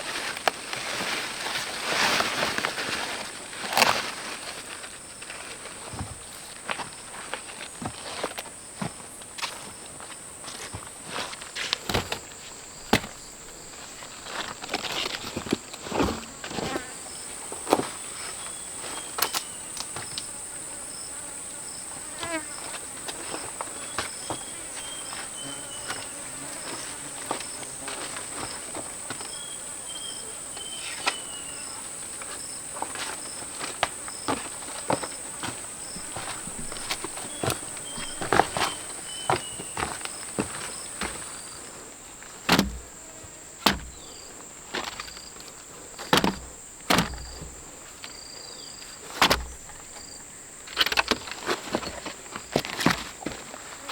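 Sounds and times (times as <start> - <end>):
insects droning: 0.0 - 53.9
footsteps: 10.5 - 20.6, 21.4 - 43.0
rustling: 11.1 - 48.2
knocks: 42.5 - 42.9, 43.6 - 44.0.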